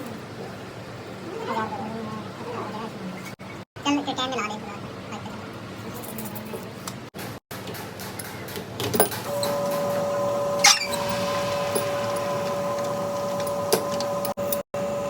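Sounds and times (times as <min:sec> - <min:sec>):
machine humming: 0:09.2 - 0:15.0.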